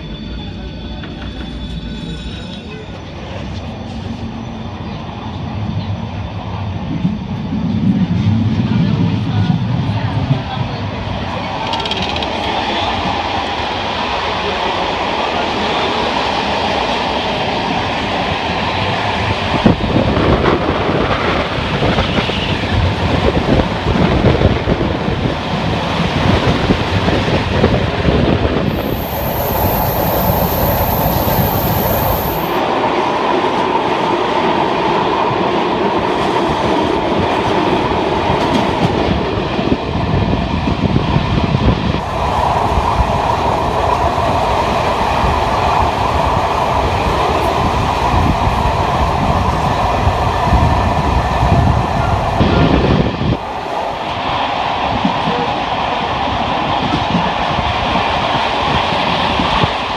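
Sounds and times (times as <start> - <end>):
train wheels clacking on rails: 11.4 - 13.2
thin high-pitched tone: 28.7 - 32.6.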